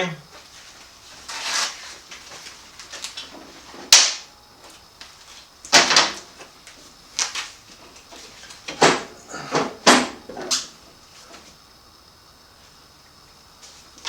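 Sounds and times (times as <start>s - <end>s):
tools knocking and clattering: 8.1s - 10.7s.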